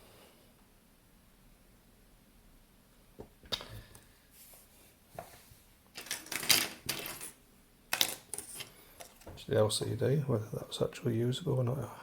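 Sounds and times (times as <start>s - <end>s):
parts clattering: 5.2s - 9.4s.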